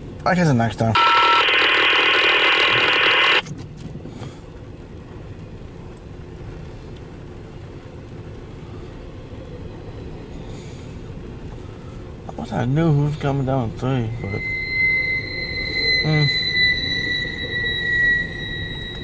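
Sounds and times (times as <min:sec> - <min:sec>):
low steady rumble: 0:00.0 - 0:19.0
radio static hiss: 0:00.9 - 0:03.4
short radio tone: 0:01.0 - 0:03.4, 0:14.0 - 0:19.0.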